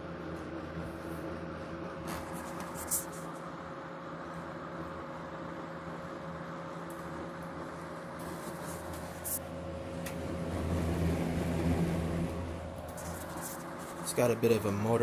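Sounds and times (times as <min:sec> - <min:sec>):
electric motor hum: 0:01.9 - 0:14.7
box fan air rushing: 0:07.7 - 0:14.3.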